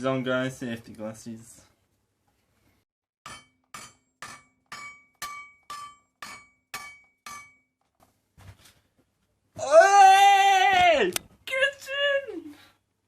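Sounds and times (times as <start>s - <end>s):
hammer striking steel: 3.2s - 7.8s.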